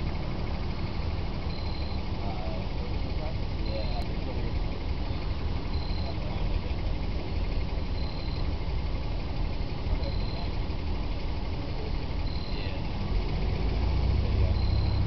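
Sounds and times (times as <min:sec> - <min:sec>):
car engine low rumble: 0:00.0 - 0:15.0
faint high chirp: 0:01.5 - 0:02.1, 0:05.2 - 0:06.2, 0:07.9 - 0:08.5, 0:10.0 - 0:10.5, 0:12.3 - 0:12.8, 0:14.4 - 0:15.0.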